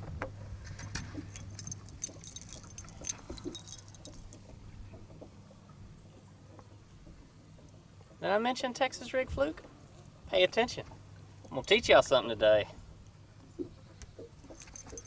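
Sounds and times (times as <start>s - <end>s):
small metal objects jingling: 0.9s - 4.4s, 14.4s - 15.0s.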